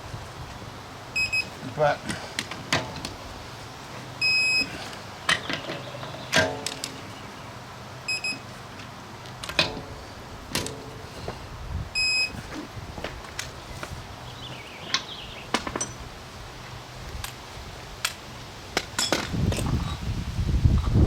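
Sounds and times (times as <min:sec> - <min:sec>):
torque wrench beeping: 0:01.2 - 0:01.6, 0:04.2 - 0:04.8, 0:08.1 - 0:08.4, 0:12.0 - 0:12.4.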